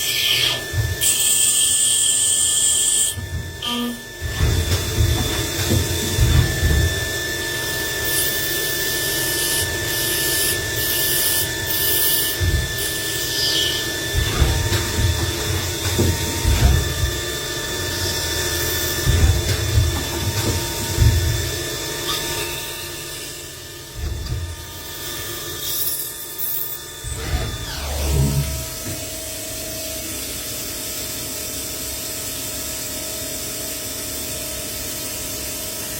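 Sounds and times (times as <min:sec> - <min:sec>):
high spindle whine: 0:03.1 - 0:26.0, 0:26.8 - 0:29.8
low thumps: 0:14.1 - 0:17.4, 0:18.9 - 0:21.8, 0:27.0 - 0:29.3.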